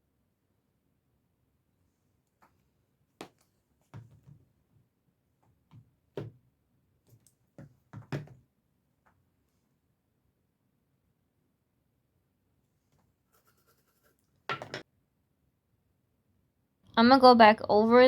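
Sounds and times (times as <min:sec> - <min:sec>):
makeup brushes and palettes tapping: 0:07.1 - 0:08.4, 0:14.5 - 0:14.8.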